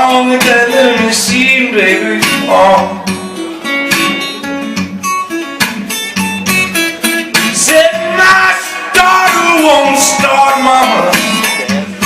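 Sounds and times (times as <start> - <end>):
acoustic guitar playing: 0.0 - 12.0.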